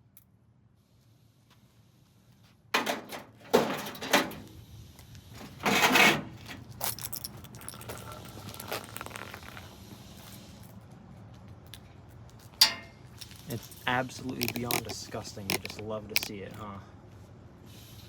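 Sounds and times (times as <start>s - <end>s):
metal rattling clatter: 2.8s - 4.6s, 5.4s - 6.7s.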